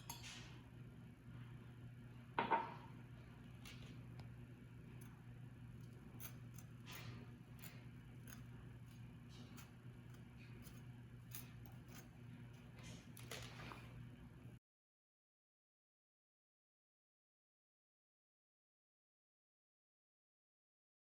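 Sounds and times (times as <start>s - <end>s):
steady low hum: 0.0s - 14.6s.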